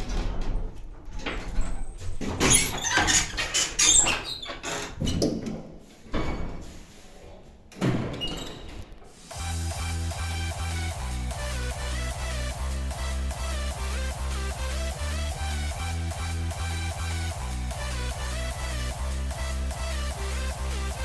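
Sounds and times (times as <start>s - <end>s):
lift doors clattering and scraping: 0.0s - 9.6s.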